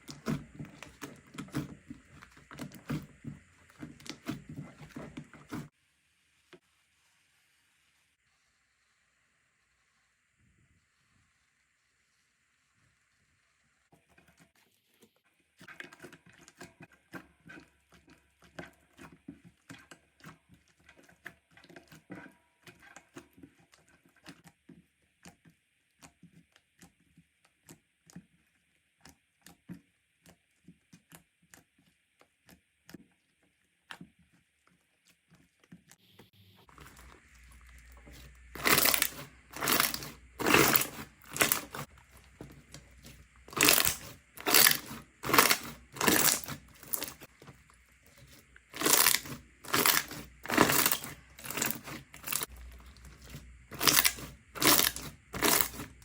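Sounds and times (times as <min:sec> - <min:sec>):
slime squishing bursts: 0:36.7 - 0:56.0
slime sticky clicks and crackles: 0:38.1 - 0:41.8, 0:48.2 - 0:52.5.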